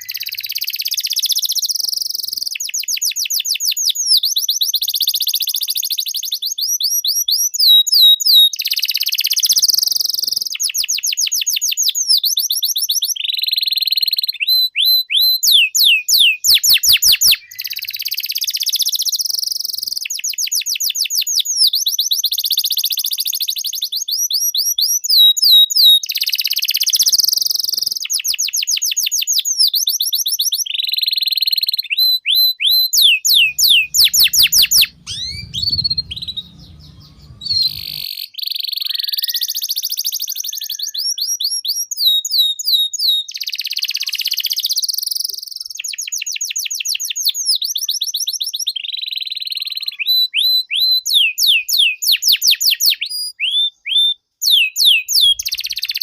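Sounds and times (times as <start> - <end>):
canary singing: 0.0 - 0.8, 33.0 - 38.1
faint low hum: 33.3 - 38.0.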